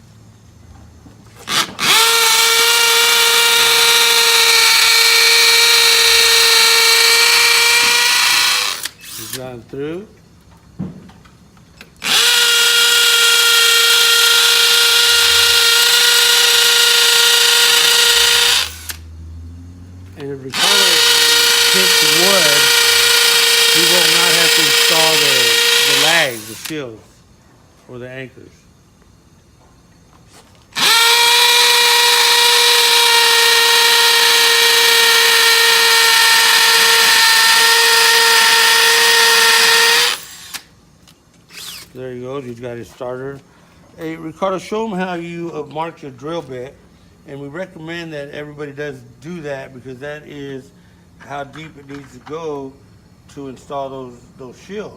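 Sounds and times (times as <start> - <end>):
electric drill boring into wall: 1.4 - 9.4, 12.0 - 19.0, 20.5 - 26.8, 30.8 - 40.7, 41.5 - 41.9.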